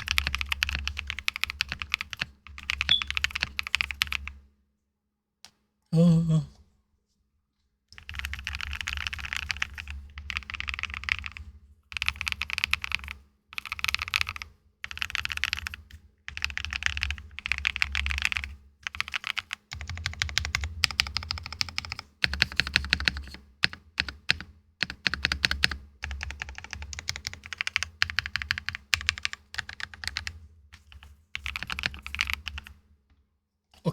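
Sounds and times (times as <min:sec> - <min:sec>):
mechanical keyboard typing: 0:00.0 - 0:04.4, 0:08.0 - 0:32.8.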